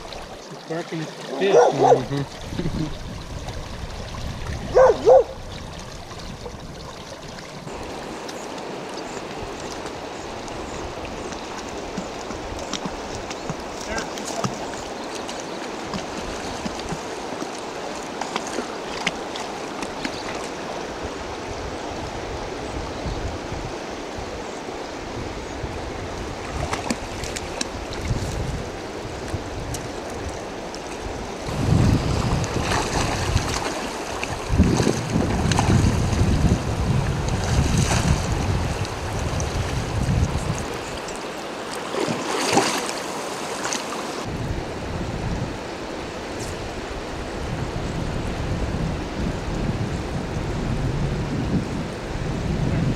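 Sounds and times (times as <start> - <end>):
river water rushing: 0.0 - 47.6
sharp clicks or splashes: 11.3 - 20.6, 38.8 - 43.9.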